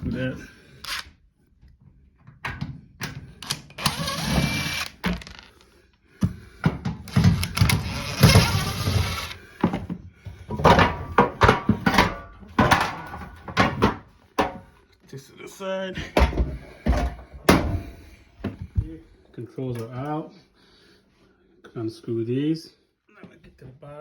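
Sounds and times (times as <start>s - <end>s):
power screwdriver running: 0.8s - 1.0s, 3.4s - 5.5s, 7.1s - 9.4s
clicks and knocks of parts: 2.2s - 5.7s, 6.9s - 9.4s.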